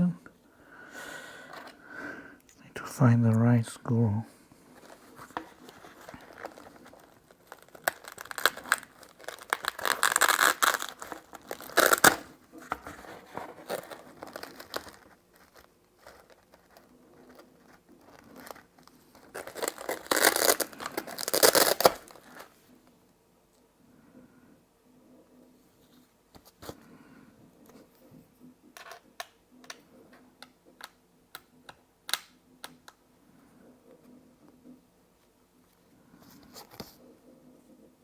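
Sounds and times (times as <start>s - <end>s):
plastic crinkling and rustling: 4.7s - 22.6s.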